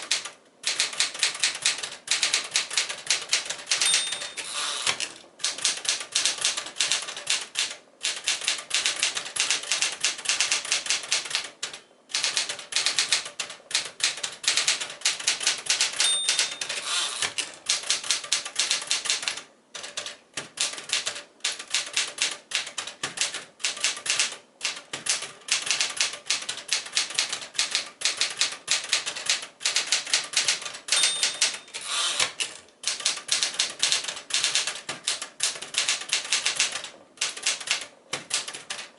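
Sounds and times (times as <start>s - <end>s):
typewriter key strikes: 0.0s - 11.5s, 12.2s - 19.2s, 19.8s - 38.9s
typewriter margin bell ringing: 3.8s - 4.9s, 16.0s - 17.3s, 30.9s - 32.2s.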